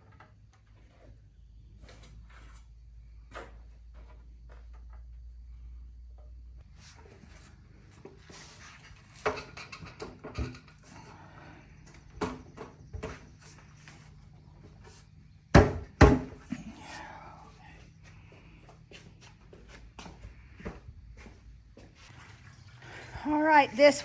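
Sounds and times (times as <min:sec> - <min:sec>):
wooden boards and clamps knocking: 0:15.6 - 0:16.4.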